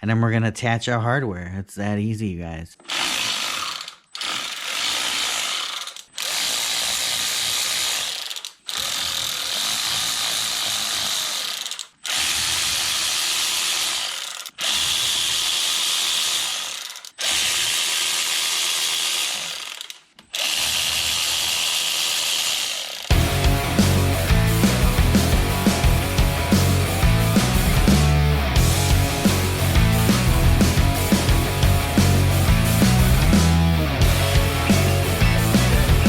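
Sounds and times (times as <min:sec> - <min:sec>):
power ratchet running: 0:02.8 - 0:27.6.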